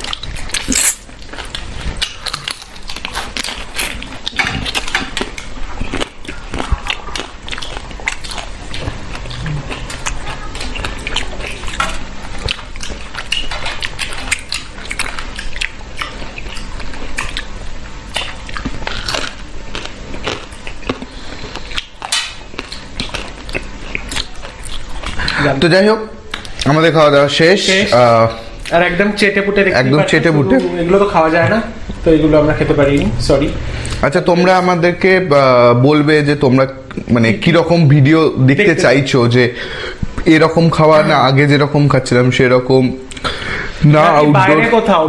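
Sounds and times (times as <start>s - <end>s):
person chewing and sucking food: 0.0s - 25.6s, 26.3s - 26.8s, 33.7s - 34.1s, 43.0s - 43.8s.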